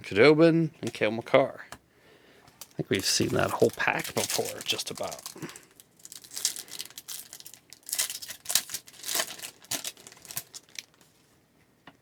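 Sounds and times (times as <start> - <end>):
plastic wrapper tearing and crinkling: 2.6 - 11.1.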